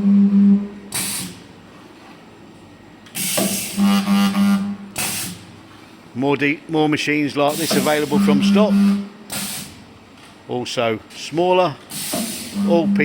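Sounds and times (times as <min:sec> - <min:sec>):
compressed air hiss: 0:01.0 - 0:01.4, 0:03.2 - 0:03.8, 0:05.0 - 0:05.4, 0:07.5 - 0:08.4, 0:09.3 - 0:09.8, 0:11.9 - 0:12.6
electrical buzz of welder: 0:03.2 - 0:05.5, 0:07.6 - 0:09.9.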